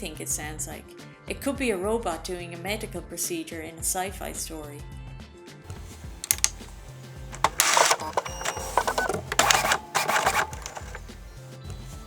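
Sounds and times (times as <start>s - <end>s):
sharp clicks: 5.7s - 11.4s
fast mechanical whirring: 5.7s - 11.5s.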